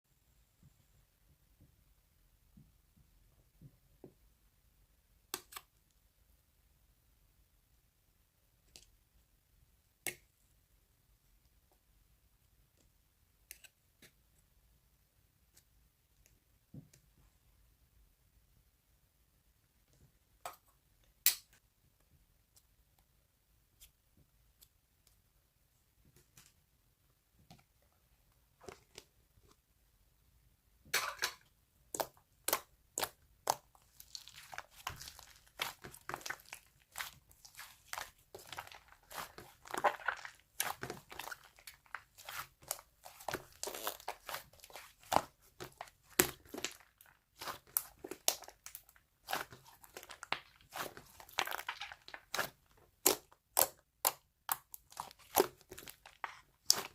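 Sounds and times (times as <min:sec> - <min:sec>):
faint clicks of slime: 0:05.3 - 0:05.9, 0:08.6 - 0:09.0, 0:10.0 - 0:10.3
slime crunchy crackles: 0:31.9 - 0:56.9.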